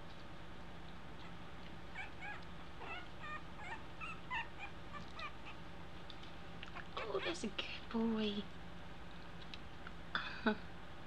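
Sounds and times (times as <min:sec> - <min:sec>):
puppies whimpering: 0:01.2 - 0:05.6.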